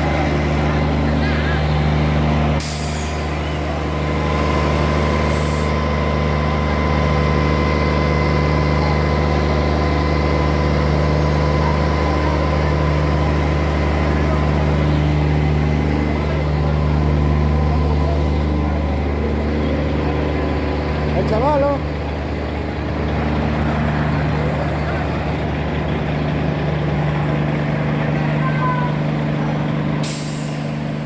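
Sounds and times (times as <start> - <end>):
heavy engine idling: 0.0 - 31.0
air brake hisses: 2.6 - 3.5, 5.2 - 5.7, 30.0 - 30.8.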